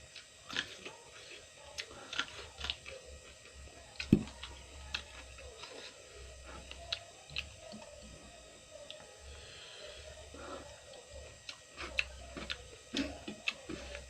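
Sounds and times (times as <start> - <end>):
chewing cucumber crunches: 0.1 - 1.0, 1.8 - 3.4, 11.4 - 14.0.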